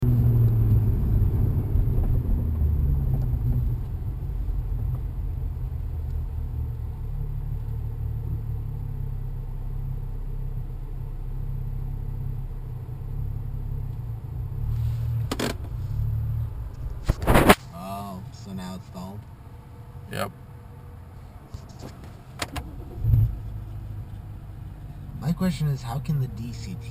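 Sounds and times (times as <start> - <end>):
car engine idling roughly: 21.6 - 24.6.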